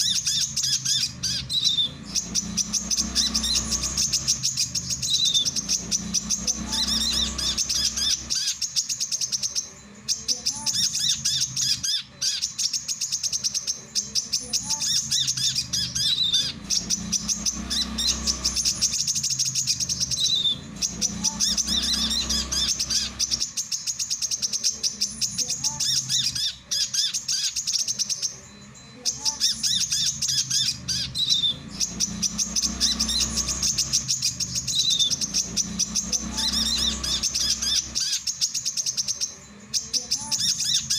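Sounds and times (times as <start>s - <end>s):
bird singing rapid high chirps: 0.0s - 40.9s.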